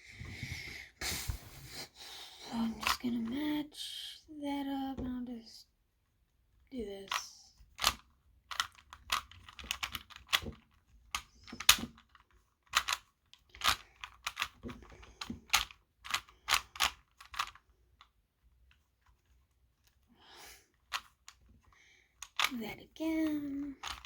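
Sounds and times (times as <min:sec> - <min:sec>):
puzzle cube clicking: 0:07.1 - 0:18.1, 0:20.8 - 0:21.5, 0:22.2 - 0:22.6, 0:23.2 - 0:24.0.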